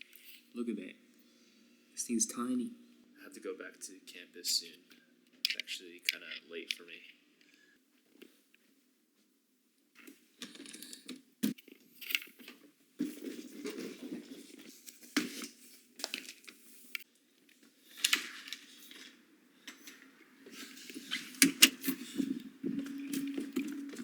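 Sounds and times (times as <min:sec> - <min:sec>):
objects rustling and clattering: 0:10.0 - 0:24.0.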